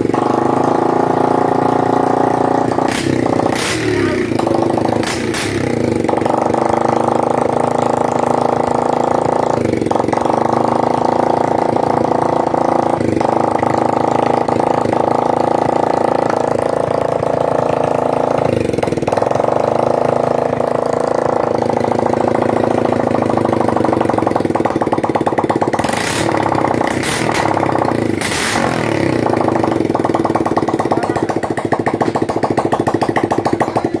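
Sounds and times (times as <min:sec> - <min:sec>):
motorcycle engine running: 0:00.0 - 0:34.0
sharp cracks: 0:02.9 - 0:06.0.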